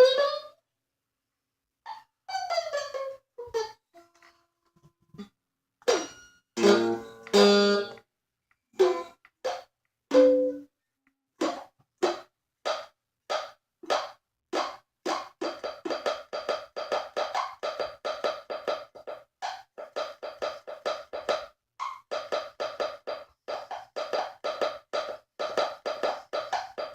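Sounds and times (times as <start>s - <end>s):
guitar clip-clop rhythm: 5.8s - 10.7s, 11.4s - 26.9s.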